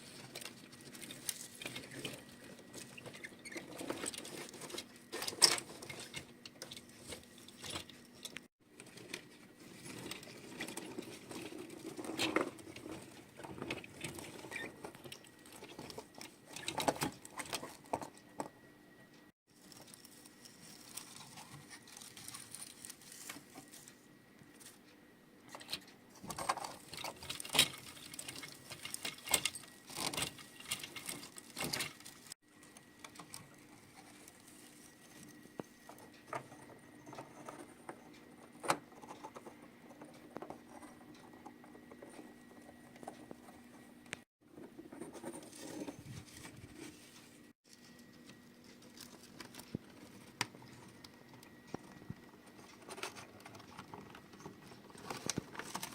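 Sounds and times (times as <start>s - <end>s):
toy models clicking and rattling: 26.2s - 32.4s.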